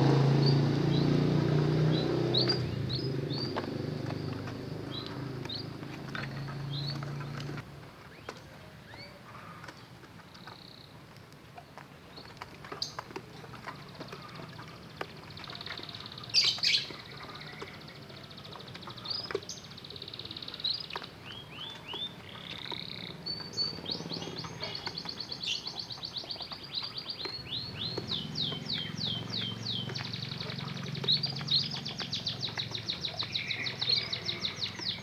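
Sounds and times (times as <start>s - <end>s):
birds chirping and trilling: 0.0s - 35.0s.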